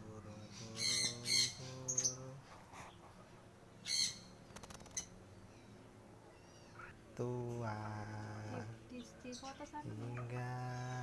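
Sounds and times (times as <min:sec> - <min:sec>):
cockatoo squawking: 0:00.8 - 0:02.1, 0:03.8 - 0:04.3.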